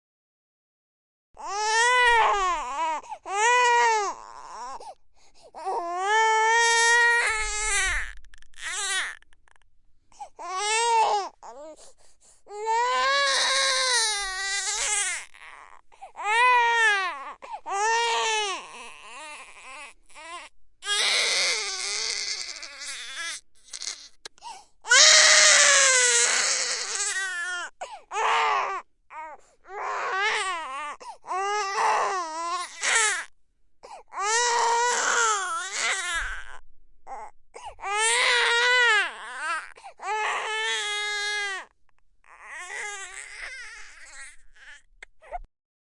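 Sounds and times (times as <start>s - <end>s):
baby crying: 1.4s - 4.9s, 5.6s - 9.2s, 10.4s - 11.8s, 12.5s - 24.3s, 24.9s - 33.3s, 34.1s - 41.7s, 42.3s - 45.5s
baby gasping for breath: 24.4s - 24.7s.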